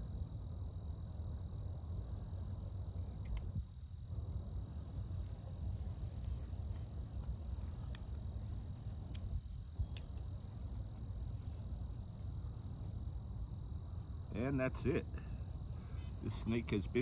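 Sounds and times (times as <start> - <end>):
faint sharp clicks: 3.2 - 3.6, 7.9 - 8.1, 9.1 - 10.3.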